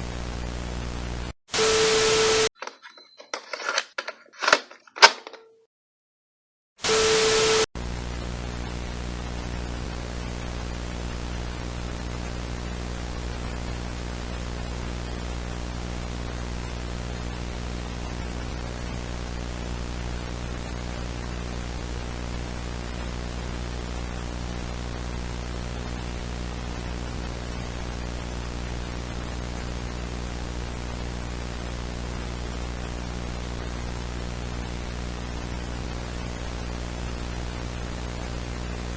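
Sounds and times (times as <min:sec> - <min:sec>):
static burst with tone: 0:00.0 - 0:02.7, 0:06.8 - 0:12.6
hissing broadcast static: 0:00.0 - 0:05.4, 0:06.8 - 0:16.3.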